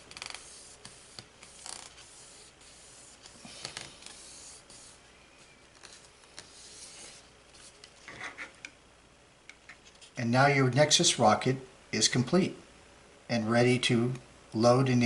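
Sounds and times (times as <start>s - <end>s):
fingers rubbing decal: 0.0s - 5.0s.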